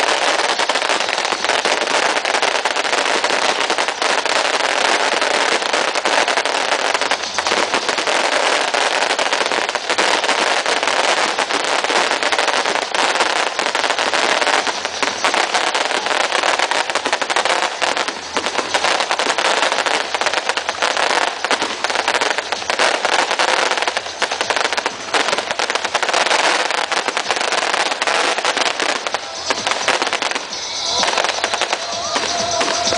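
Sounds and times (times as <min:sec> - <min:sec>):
fireworks crackling: 0:00.0 - 0:32.9.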